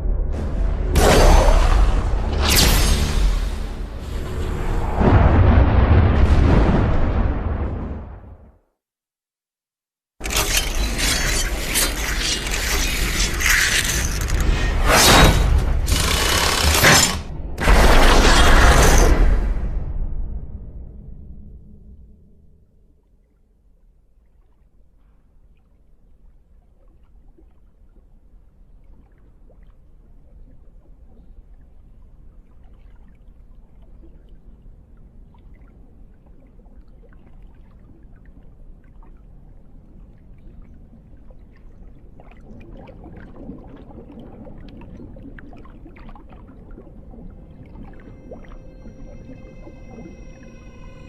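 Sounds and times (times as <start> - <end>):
low rumble: 0.0 - 8.5, 13.4 - 23.1, 46.6 - 51.0
sloshing: 10.2 - 17.2.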